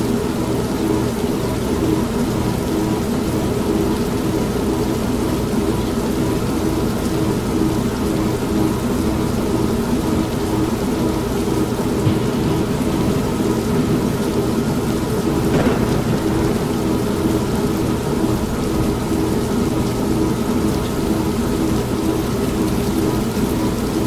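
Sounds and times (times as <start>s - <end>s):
washing machine motor hum: 12.0s - 18.8s
low rumble of thunder: 12.0s - 19.0s
continuous rain: 12.0s - 24.0s.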